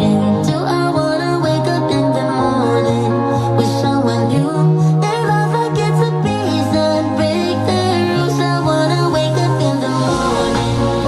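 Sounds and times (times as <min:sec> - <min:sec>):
music from portable speaker: 0:00.0 - 0:11.0
held bass notes: 0:09.8 - 0:11.0.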